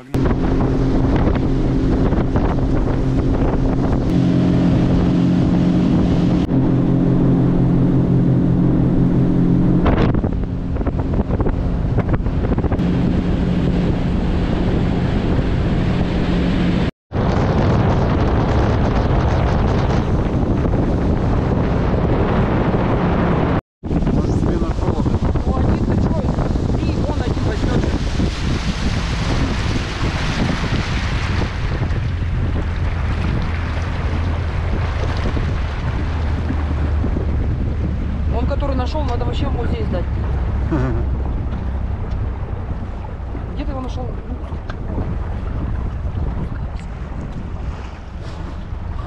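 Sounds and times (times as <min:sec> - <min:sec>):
vehicle engine running: 0:00.0 - 0:16.8
wind buffeting microphone: 0:00.0 - 0:49.0.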